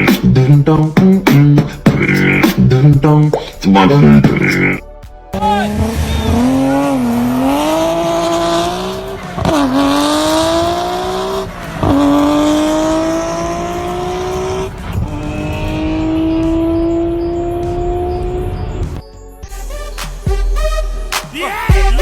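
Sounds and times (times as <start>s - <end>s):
car engine accelerating through gears: 5.6s - 19.0s.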